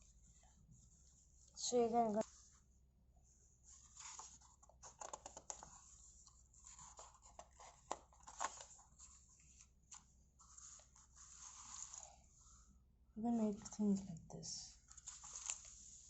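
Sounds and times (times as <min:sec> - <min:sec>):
paper pages rustling: 0:03.7 - 0:12.6, 0:14.8 - 0:16.0.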